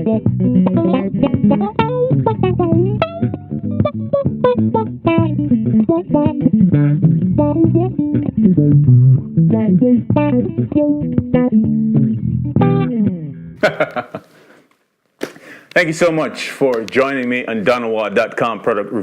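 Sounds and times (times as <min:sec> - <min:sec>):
electric bass plucked notes: 0:00.0 - 0:13.6.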